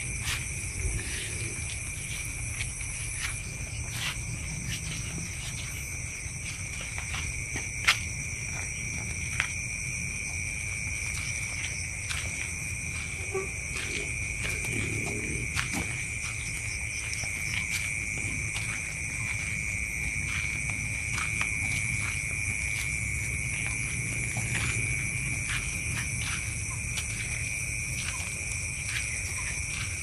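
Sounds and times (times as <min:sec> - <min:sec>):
night insects chirring: 0:00.0 - 0:30.0.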